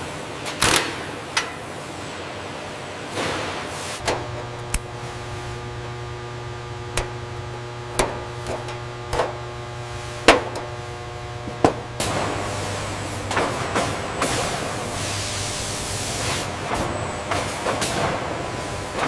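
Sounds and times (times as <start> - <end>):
machine hum with held tones: 4.0 - 19.0.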